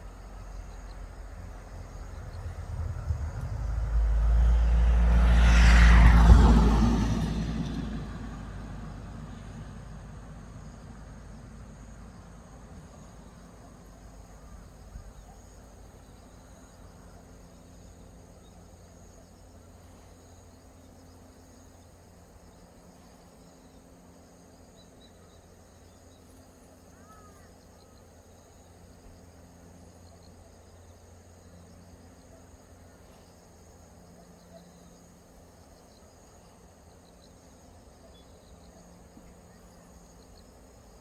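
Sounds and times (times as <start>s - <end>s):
low hum: 0.0s - 13.8s
passing vehicle: 0.0s - 24.7s
insects chirring: 0.0s - 41.0s.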